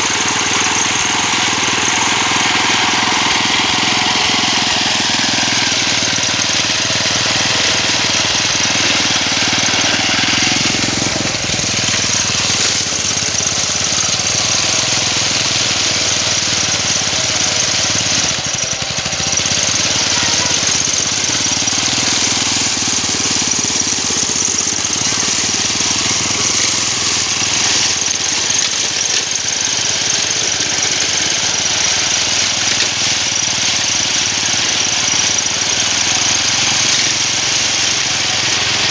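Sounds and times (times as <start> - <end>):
push mower engine running: 0.0 - 38.9.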